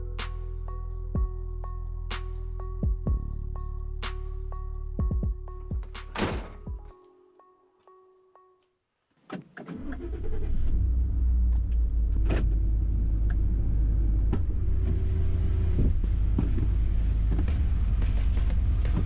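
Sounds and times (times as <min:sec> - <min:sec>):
engine and road rumble: 0:09.8 - 0:19.0.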